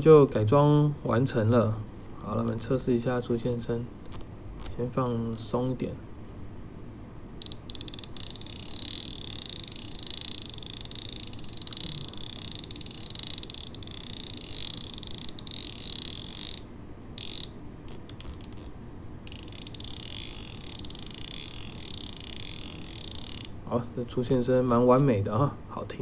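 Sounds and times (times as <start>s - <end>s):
fishing reel clicker buzzing: 2.5s - 4.7s, 7.4s - 18.7s, 19.3s - 23.6s.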